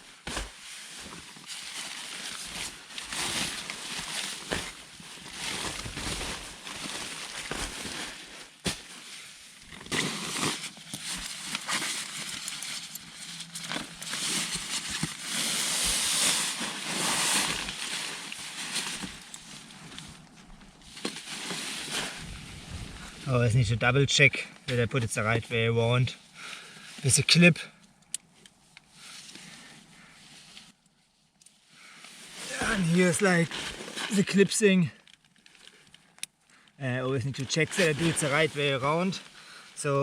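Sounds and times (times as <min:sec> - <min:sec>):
strong wind gusting: 0:22.2 - 0:23.3.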